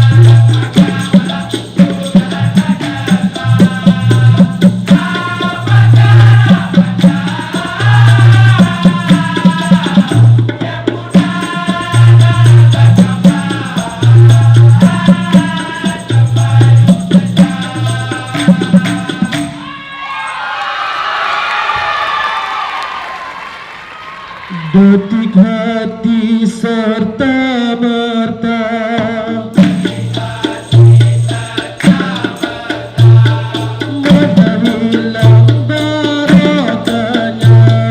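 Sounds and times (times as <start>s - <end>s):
maracas shaking: 0.0s - 20.6s, 29.6s - 37.9s
audience cheering: 19.6s - 25.4s.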